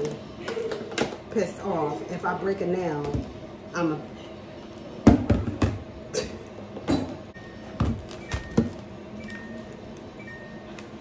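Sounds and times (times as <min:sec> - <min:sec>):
refrigerator alarm beeps: 0:07.3 - 0:11.0.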